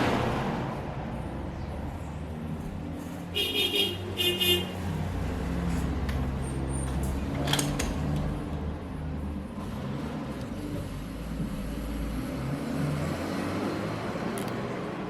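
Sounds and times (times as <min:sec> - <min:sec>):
low traffic rumble: 0:00.0 - 0:15.0
vehicle horn toots: 0:03.4 - 0:04.8.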